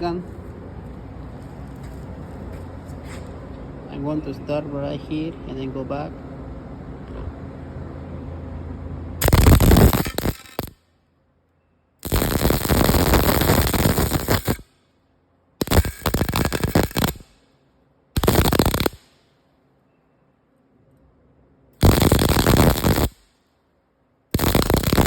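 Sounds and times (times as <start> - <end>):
welding arc crackling: 9.2 - 10.8, 12.0 - 14.7, 15.6 - 17.4, 18.2 - 19.2, 21.8 - 23.3, 24.3 - 25.0.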